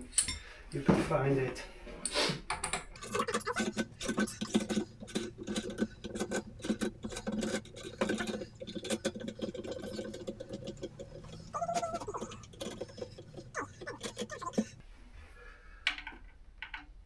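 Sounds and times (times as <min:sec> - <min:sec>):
hand tools clicking and rattling: 0:02.6 - 0:14.8.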